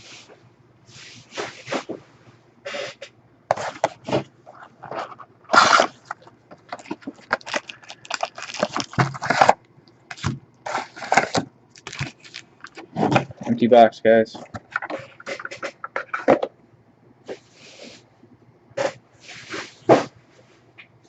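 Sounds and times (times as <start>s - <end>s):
trading card packs crinkling: 4.5s - 13.6s.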